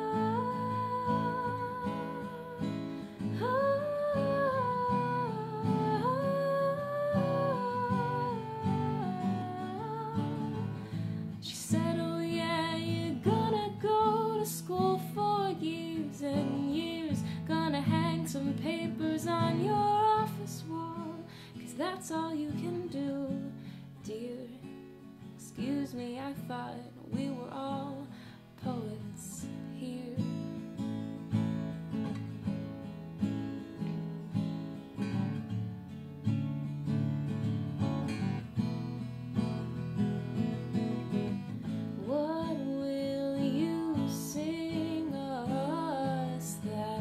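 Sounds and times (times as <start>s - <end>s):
acoustic guitar strumming: 0.0s - 15.1s, 30.5s - 42.4s
woman singing: 0.0s - 30.8s, 41.9s - 47.0s.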